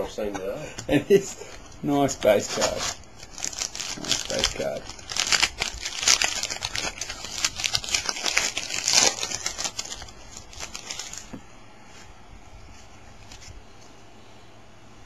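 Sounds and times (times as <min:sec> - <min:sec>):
card pack wrapper crinkling: 0:02.0 - 0:11.4.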